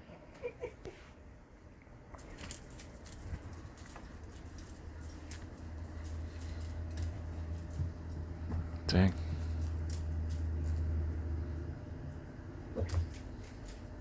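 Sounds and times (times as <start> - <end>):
low steady hum: 0.0 - 14.0
cats clawing at toy: 2.1 - 11.3, 12.8 - 14.0.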